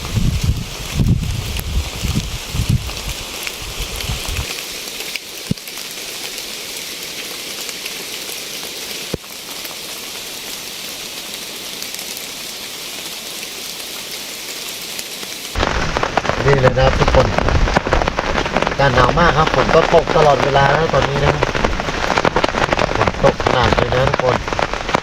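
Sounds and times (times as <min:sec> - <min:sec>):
wind buffeting microphone: 0:00.0 - 0:04.5, 0:15.6 - 0:25.0
heavy rain falling: 0:00.0 - 0:25.0.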